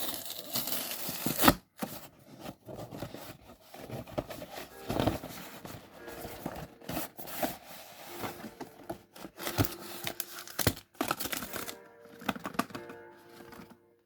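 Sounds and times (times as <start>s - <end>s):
packaging tearing and crinkling: 0.0s - 2.0s, 9.3s - 12.9s.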